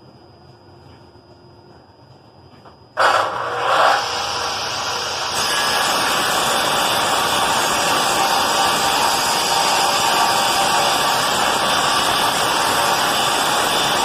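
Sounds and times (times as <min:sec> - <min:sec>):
power tool whirring: 0:03.0 - 0:14.0.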